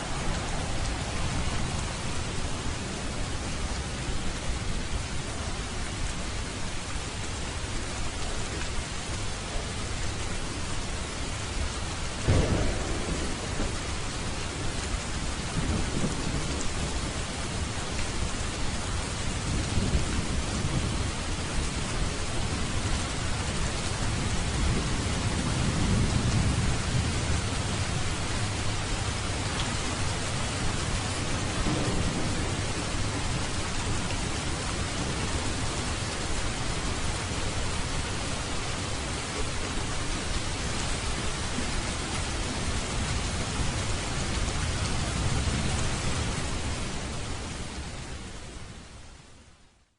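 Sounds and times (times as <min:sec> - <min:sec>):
steady rain: 0:00.0 - 0:49.9
thunder: 0:12.2 - 0:17.6, 0:24.0 - 0:29.2, 0:29.8 - 0:35.8.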